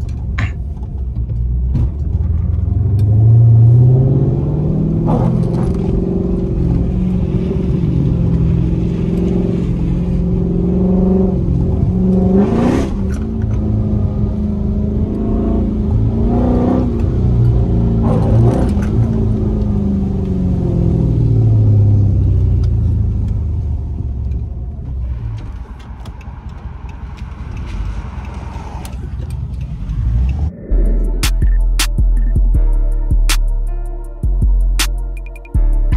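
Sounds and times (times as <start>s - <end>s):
car engine accelerating: 0.0s - 35.9s
music with drum beat: 30.8s - 35.9s.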